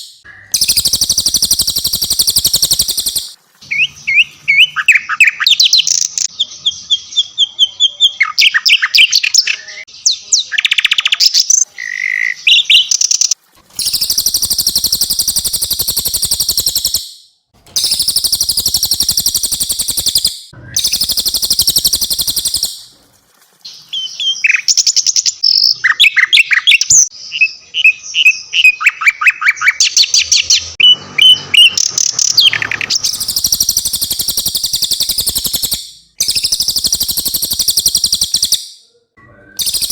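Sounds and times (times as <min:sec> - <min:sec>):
fast buzzy bird trills: 0:00.0 - 0:03.4, 0:13.8 - 0:22.9, 0:32.4 - 0:38.8, 0:39.6 - 0:39.9
songbird chirps and whistles: 0:00.0 - 0:22.9, 0:23.9 - 0:39.9.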